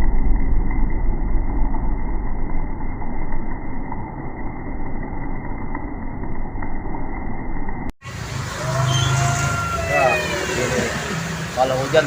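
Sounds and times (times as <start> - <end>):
muffled vehicle rumble: 0.0 - 8.3
engine hum: 0.0 - 12.0.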